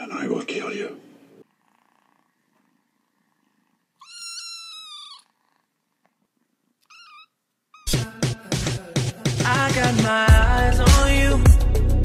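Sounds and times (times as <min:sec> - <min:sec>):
cat purring: 0:01.4 - 0:09.0
cat meowing: 0:04.0 - 0:05.6, 0:06.8 - 0:08.0.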